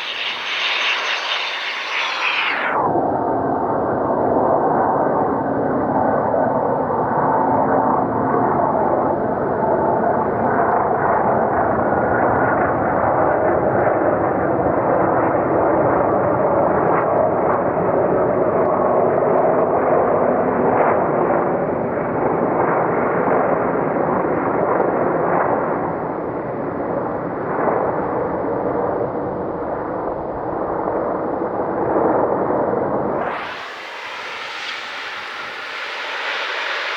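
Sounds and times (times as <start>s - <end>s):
airliner engines and airflow rushing: 0.0s - 36.9s.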